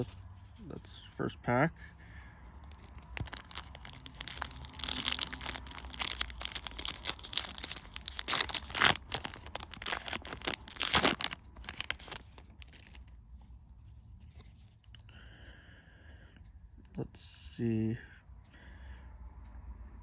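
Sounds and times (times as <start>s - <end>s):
wrapper tearing and crinkling: 2.7s - 13.1s.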